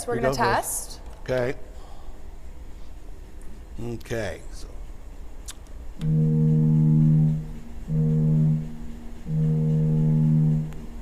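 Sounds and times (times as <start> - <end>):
deep ship's whistle blasts: 6.0 - 11.0.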